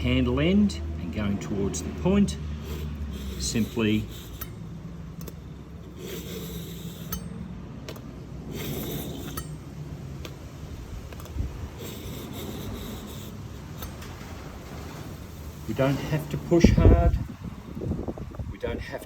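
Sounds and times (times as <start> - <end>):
knife scraping on sharpening stone: 2.6 - 7.5, 8.5 - 9.6, 11.9 - 14.1.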